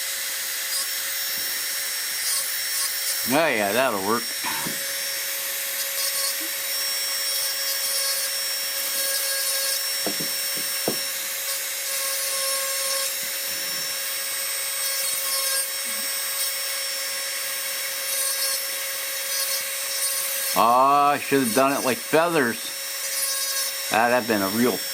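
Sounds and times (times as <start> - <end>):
rotary tool motor whine: 0.0 - 24.9
grinding hiss on wood: 3.1 - 4.9, 20.5 - 22.8.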